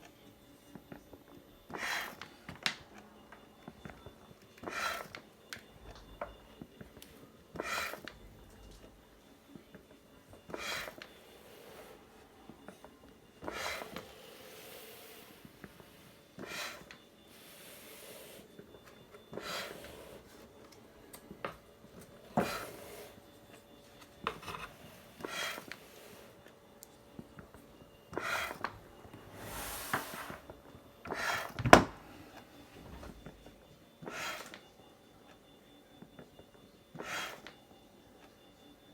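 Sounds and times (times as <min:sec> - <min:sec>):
ventilator mechanical stroke: 0:10.3 - 0:21.0, 0:21.8 - 0:23.5, 0:28.0 - 0:33.3.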